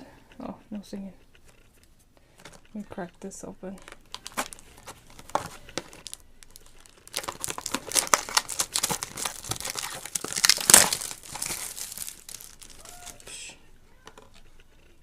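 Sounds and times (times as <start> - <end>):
plastic packaging crinkling: 3.7 - 13.3
cardboard box tearing: 6.8 - 13.2.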